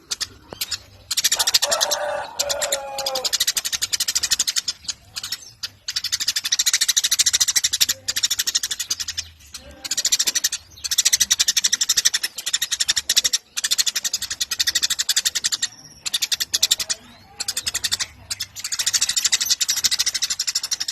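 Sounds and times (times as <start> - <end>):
sparrow chirping: 0.0 - 20.9.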